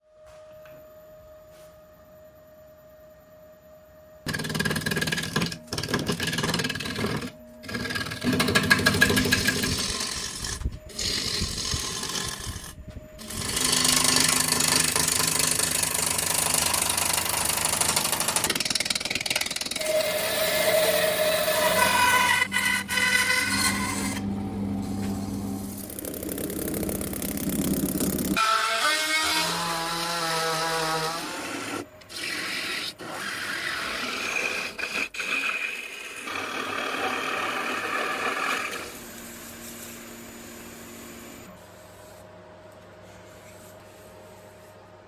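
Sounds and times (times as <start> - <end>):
turning tool cutting wood: 4.3 - 39.1
wood lathe hum: 4.3 - 42.2.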